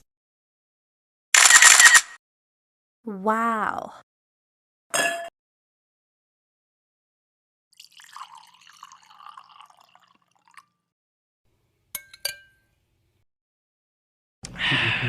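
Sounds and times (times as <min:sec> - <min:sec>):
glass clinking: 0:05.0 - 0:05.3, 0:11.9 - 0:12.8
tea pouring into a glass: 0:07.7 - 0:10.8.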